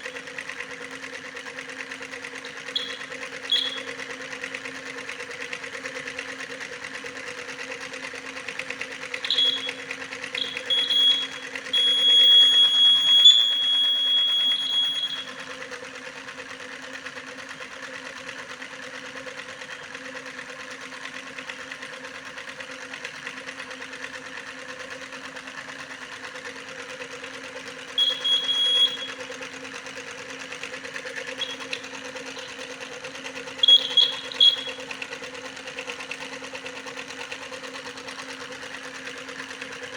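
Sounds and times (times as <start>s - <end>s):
high-pitched electronic beeps: 2.7s - 3.9s, 9.2s - 9.8s, 10.4s - 15.3s, 28.0s - 29.2s, 31.4s - 32.6s, 33.6s - 34.8s.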